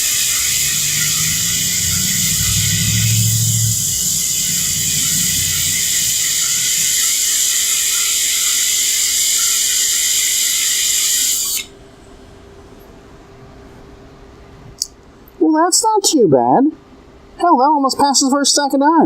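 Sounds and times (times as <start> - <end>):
welding arc hissing: 0.0 - 11.7.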